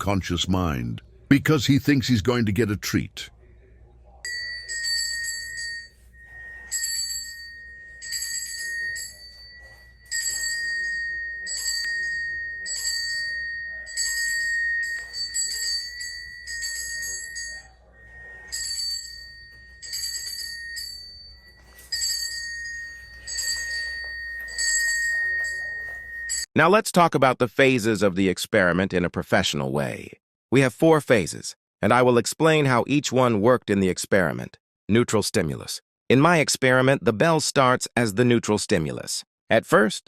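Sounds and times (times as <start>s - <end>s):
small bell ringing: 4.3s - 26.5s.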